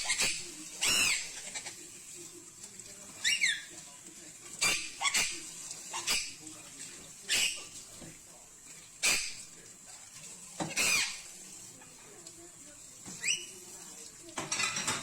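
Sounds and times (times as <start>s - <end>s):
parrot squawking: 0.0s - 1.8s, 3.2s - 3.7s, 4.6s - 6.4s, 7.3s - 7.8s, 9.0s - 9.5s, 10.6s - 11.9s, 13.2s - 13.6s.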